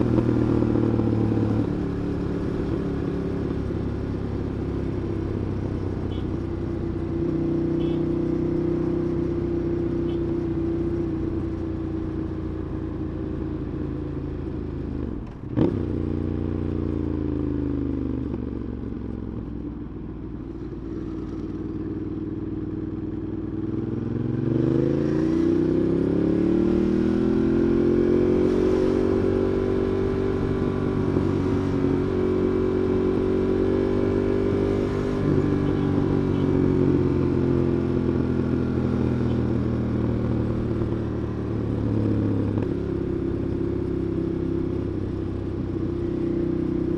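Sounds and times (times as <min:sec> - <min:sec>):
motorcycle engine running: 0:00.0 - 0:46.9.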